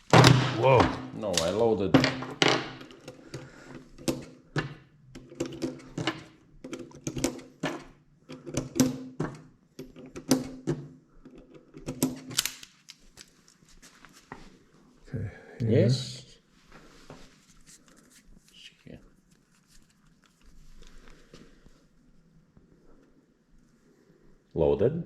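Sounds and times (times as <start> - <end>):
metallic clicks of gun loading: 11.9 - 13.4.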